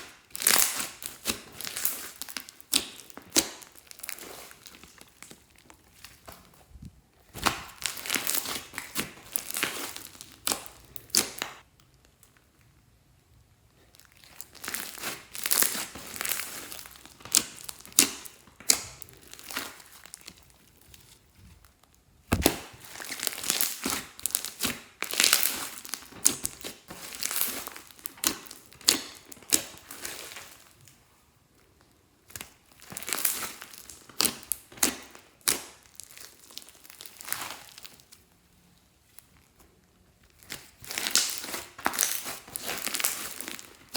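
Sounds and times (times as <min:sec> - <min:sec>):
slime squished by hand: 0:00.0 - 0:06.3, 0:07.3 - 0:11.6, 0:13.9 - 0:21.1, 0:22.3 - 0:30.7, 0:40.3 - 0:43.9
heavy thud: 0:22.3 - 0:22.6.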